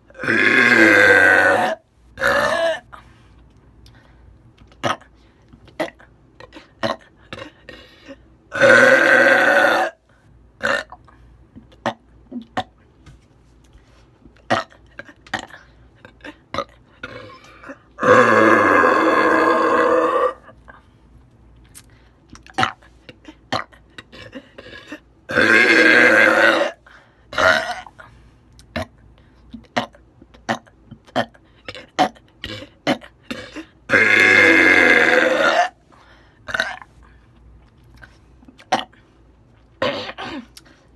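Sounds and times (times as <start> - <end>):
woman burping: 0.1 - 2.9, 14.5 - 20.6, 27.4 - 28.0, 29.7 - 35.8, 39.8 - 40.6.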